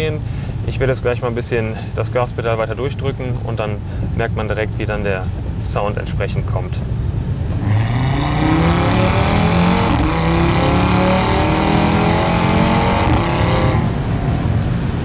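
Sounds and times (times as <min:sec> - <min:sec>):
car engine accelerating hard: 0:07.3 - 0:14.9.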